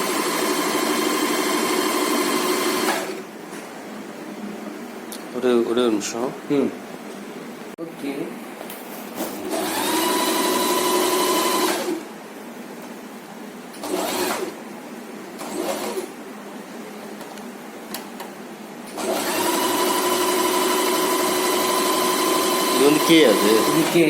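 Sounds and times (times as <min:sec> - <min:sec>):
electric sewing machine stitching: 0:00.0 - 0:03.2, 0:09.4 - 0:12.0, 0:13.8 - 0:14.6, 0:15.4 - 0:16.1, 0:18.9 - 0:24.0.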